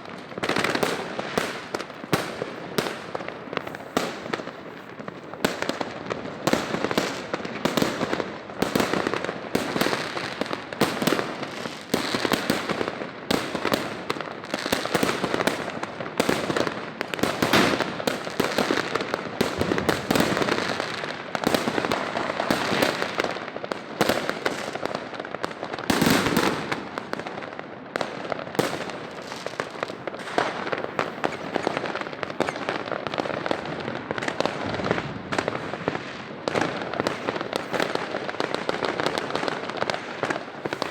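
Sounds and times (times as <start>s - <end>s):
fireworks bangs and crackling: 0.0s - 40.9s.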